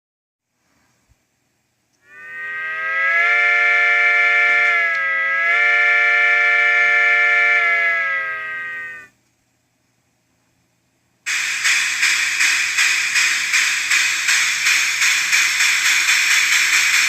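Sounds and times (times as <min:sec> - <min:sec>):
loud siren-like tone: 0:02.1 - 0:09.1.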